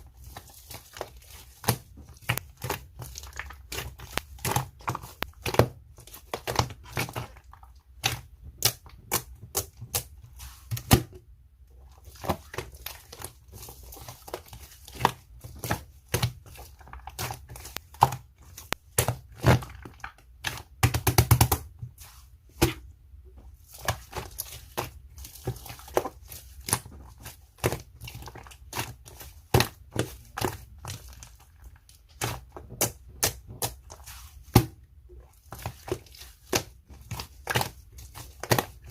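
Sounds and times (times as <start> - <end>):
slime crackling: 0.0 - 11.2.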